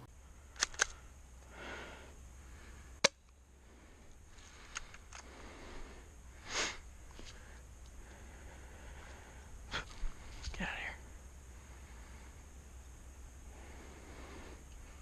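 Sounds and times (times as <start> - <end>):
faint ticks: 8.9 - 10.6, 14.6 - 15.0.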